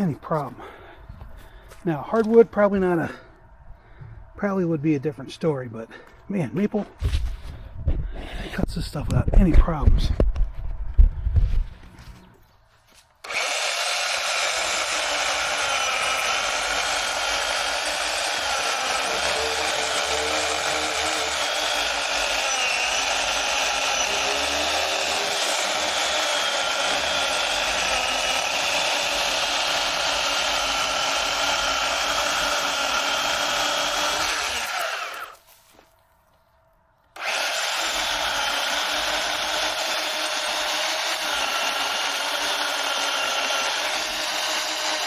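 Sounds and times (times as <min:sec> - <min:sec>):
electric chainsaw cutting wood: 0:13.2 - 0:35.4, 0:37.2 - 0:45.0.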